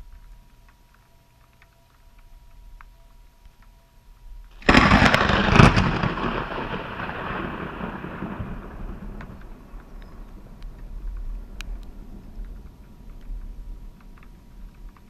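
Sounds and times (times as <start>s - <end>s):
thunder rumbling: 4.4s - 15.0s
thunder cracks: 4.6s - 13.9s.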